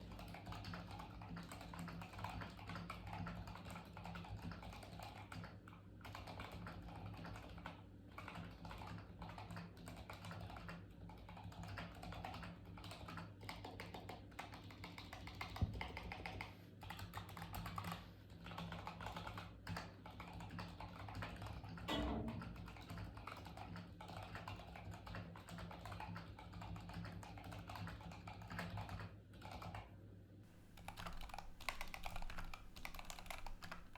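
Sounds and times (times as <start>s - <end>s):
fast mechanical keyboard typing: 30.6s - 33.9s.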